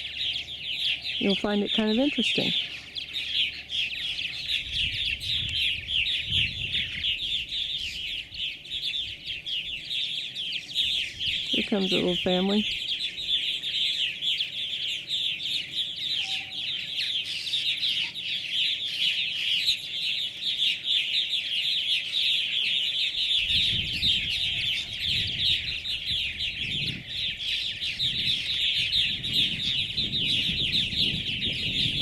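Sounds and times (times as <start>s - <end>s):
birds chattering at colony: 0.0s - 32.0s.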